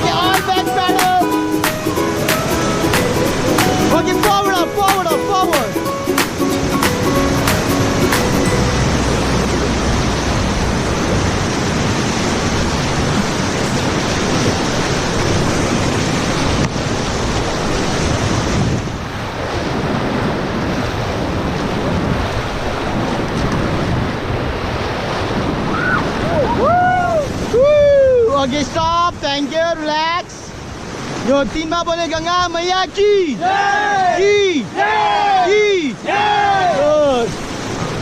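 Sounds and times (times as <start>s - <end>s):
whitewater rushing: 0.0s - 28.8s
wind buffeting microphone: 5.6s - 29.2s.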